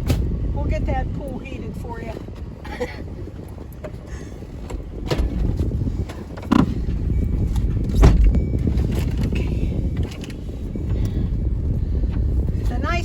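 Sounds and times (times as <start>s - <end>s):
vehicle low rumble: 0.0s - 13.0s
sharp knocks and thumps: 4.6s - 7.1s, 7.8s - 9.2s.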